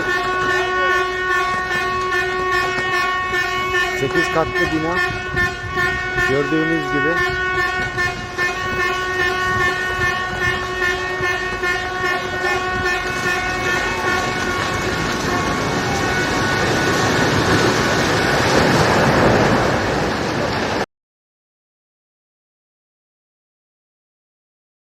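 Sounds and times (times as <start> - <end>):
vehicle horns blaring: 0.0 - 19.8
building collapsing rubble crash: 12.2 - 20.9.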